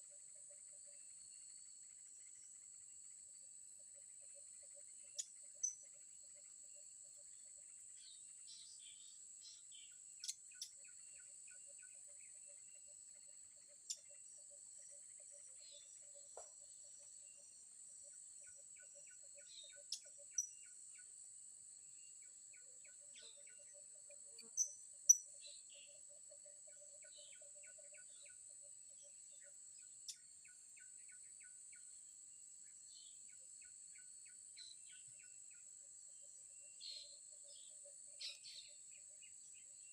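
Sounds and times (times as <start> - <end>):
insects droning: 0.1 - 39.9
faint pulsing ticks: 4.0 - 6.6, 9.4 - 12.0, 13.2 - 14.2, 18.4 - 21.1, 22.2 - 25.2, 29.4 - 31.9.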